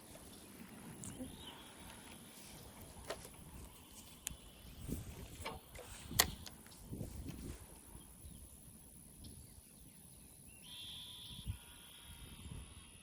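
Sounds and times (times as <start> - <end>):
sharp click: 5.4 - 6.7
bird trilled call: 10.5 - 12.2.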